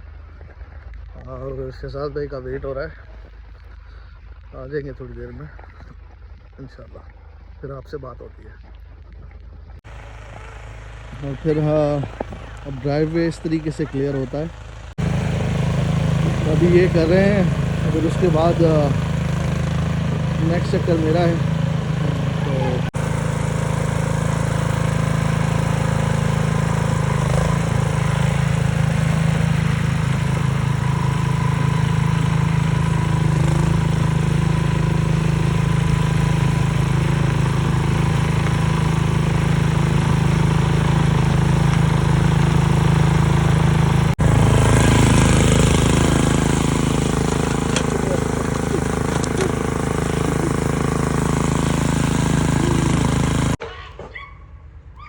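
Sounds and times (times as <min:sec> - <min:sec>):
snow blower engine running: 0:09.8 - 0:53.6.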